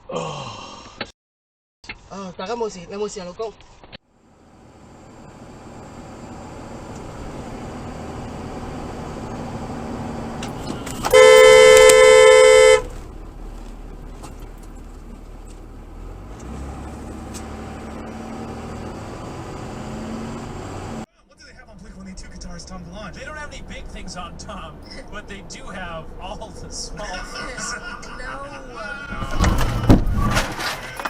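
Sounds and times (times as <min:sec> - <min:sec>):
car road and engine noise: 0:04.0 - 0:31.0
car horn blast: 0:10.5 - 0:13.0.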